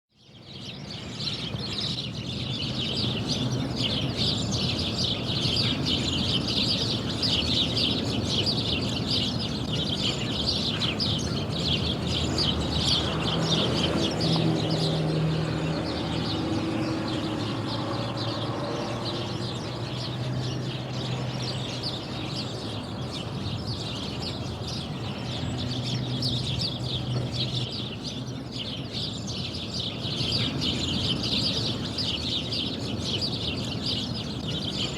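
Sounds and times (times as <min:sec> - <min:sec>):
birds chirping and calling: 0:00.3 - 0:34.9
road traffic hum: 0:00.6 - 0:34.9
vehicle passing: 0:11.1 - 0:23.4.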